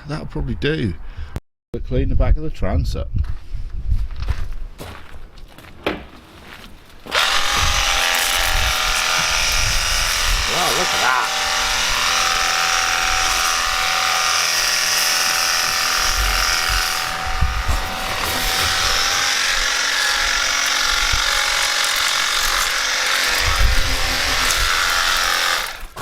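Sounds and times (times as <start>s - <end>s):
pump motor whine: 7.1s - 26.0s
water jet hissing: 17.2s - 26.0s.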